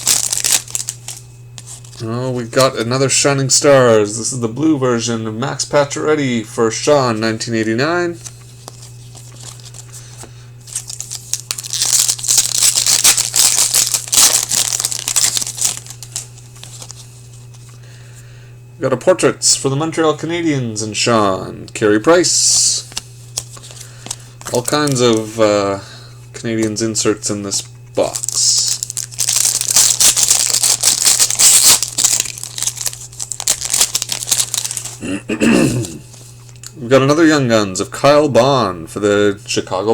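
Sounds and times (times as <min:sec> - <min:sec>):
foil wrapper tearing and crinkling: 0:00.0 - 0:02.8, 0:08.3 - 0:17.0, 0:22.9 - 0:25.4, 0:28.0 - 0:35.0
low electrical hum: 0:00.0 - 0:39.9.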